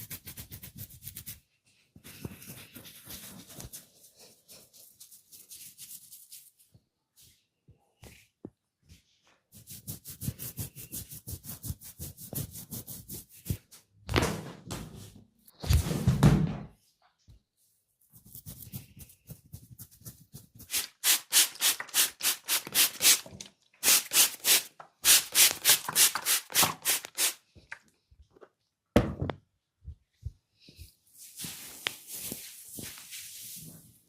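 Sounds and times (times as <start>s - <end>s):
hands rubbing hair and scalp: 0.0s - 7.4s, 8.9s - 13.8s, 18.0s - 23.2s, 23.8s - 27.4s, 30.7s - 34.0s.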